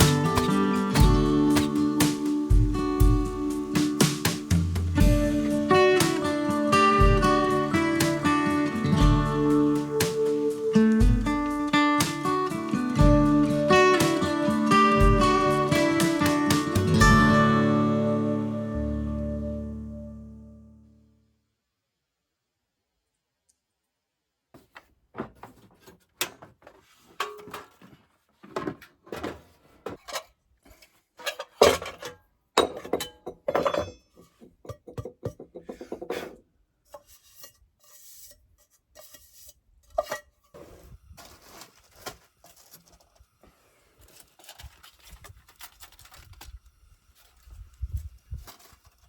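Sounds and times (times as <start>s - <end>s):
scraping: 0.0s - 2.8s, 33.6s - 46.4s
pots and dishes clattering: 0.0s - 3.2s, 25.3s - 36.4s.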